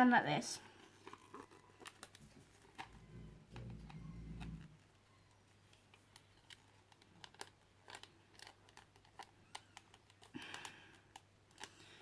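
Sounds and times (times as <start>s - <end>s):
low steady hum: 0.4s - 6.5s.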